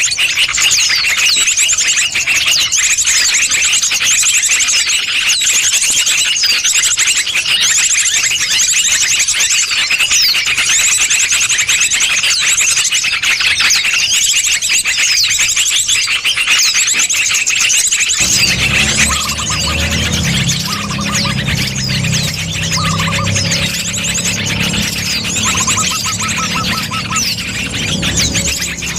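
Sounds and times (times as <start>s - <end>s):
birds chirping: 18.2s - 28.9s
high bird trills: 18.2s - 28.9s
low humming: 18.2s - 28.9s.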